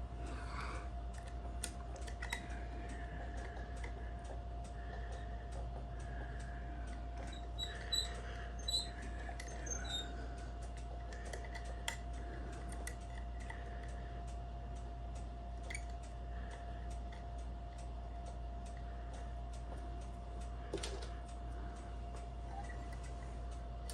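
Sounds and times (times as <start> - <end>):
lock picks clicking in a lock: 1.2 - 2.5.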